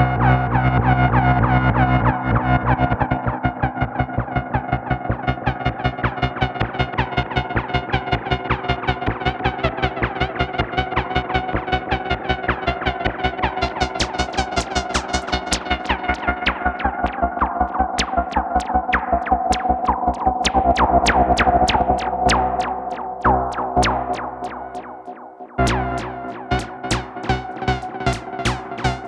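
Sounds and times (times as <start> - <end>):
pulsing synthesizer drone: 0.0 - 29.0
low bass tone: 20.8 - 29.0.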